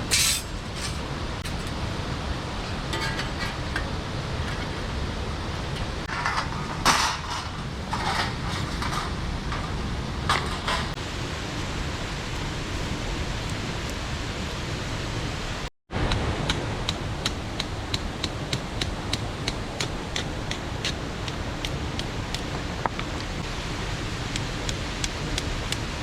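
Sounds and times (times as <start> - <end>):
mountain stream rushing: 10.9 - 26.0.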